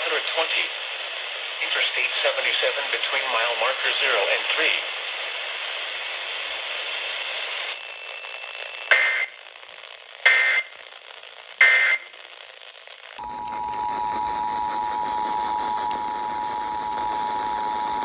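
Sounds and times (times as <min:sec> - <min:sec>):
radio static: 0:00.0 - 0:18.0
two-tone alarm signal: 0:13.2 - 0:18.0.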